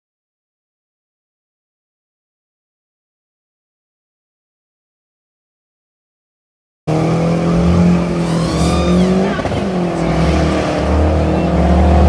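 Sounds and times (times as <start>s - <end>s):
car engine revving high: 6.9s - 12.0s
tyres squealing: 7.4s - 12.0s.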